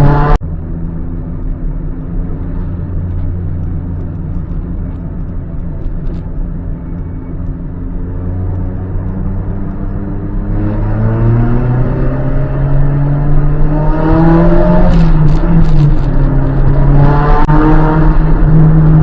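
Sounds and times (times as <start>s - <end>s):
car engine idling: 0.4s - 10.3s.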